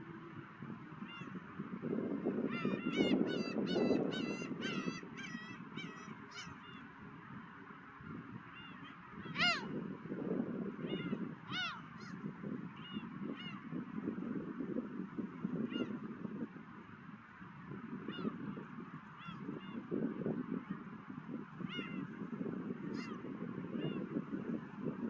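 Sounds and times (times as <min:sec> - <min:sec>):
wind rumble on microphone: 0:00.0 - 0:25.0
gulls calling: 0:02.3 - 0:09.9, 0:10.8 - 0:13.7.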